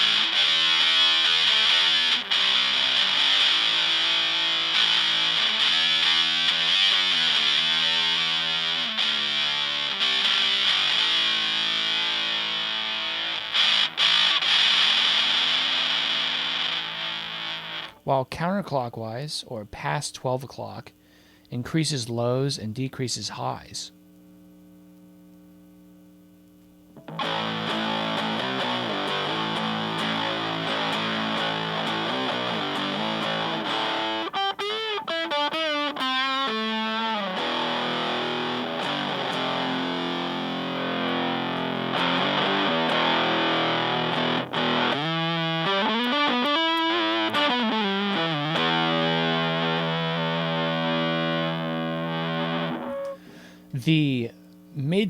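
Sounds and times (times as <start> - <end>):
fuzz-distorted electric guitar riffs: 0.0 - 18.1, 26.8 - 54.9
faint hum: 15.3 - 34.4, 49.1 - 55.0.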